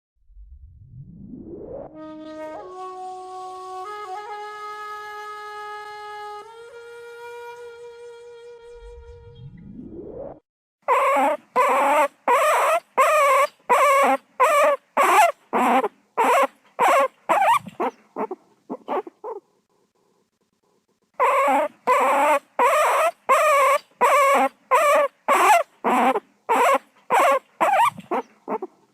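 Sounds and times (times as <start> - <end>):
short rising sweep: 8.7 - 10.4
guinea pig squealing: 10.9 - 19.4, 21.2 - 28.7.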